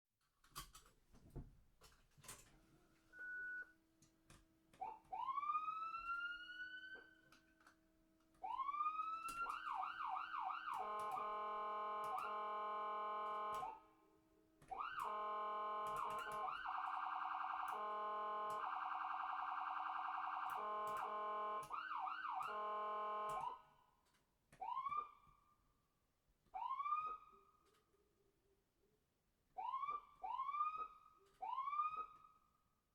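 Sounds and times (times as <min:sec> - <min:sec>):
ambulance siren: 0:04.8 - 0:07.5, 0:08.4 - 0:14.0, 0:14.6 - 0:23.9, 0:24.6 - 0:25.5, 0:26.6 - 0:27.6, 0:29.6 - 0:32.4
emergency horn blasts: 0:09.6 - 0:13.8, 0:14.7 - 0:23.6.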